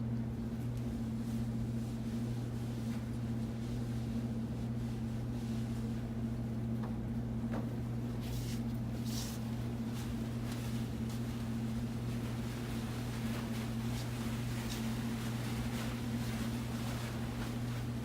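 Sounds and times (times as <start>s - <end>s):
low electrical hum: 0.0s - 18.0s
rustling and handling noises: 0.6s - 6.2s, 7.5s - 18.0s.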